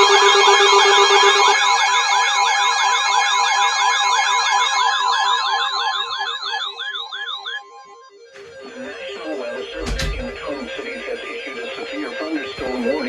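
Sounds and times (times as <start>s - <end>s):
rapid pulsing beep: 0.0s - 8.0s
warbling siren-like alert tone: 0.0s - 8.5s, 9.7s - 11.2s.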